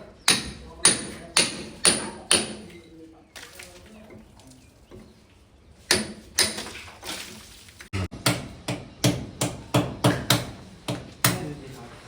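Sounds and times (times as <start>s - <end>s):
hammer striking chisel into wall: 0.3s - 2.8s, 5.9s - 6.7s, 8.2s - 11.5s.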